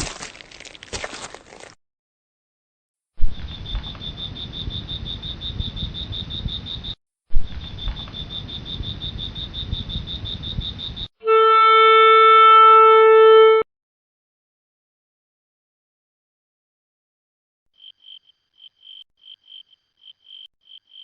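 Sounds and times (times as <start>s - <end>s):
loud horn-like tone: 11.2s - 13.7s.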